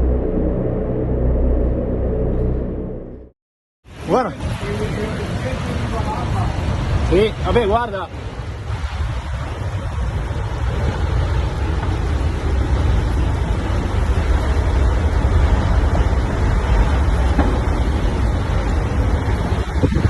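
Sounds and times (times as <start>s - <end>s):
strong wind buffeting microphone: 4.0s - 20.0s.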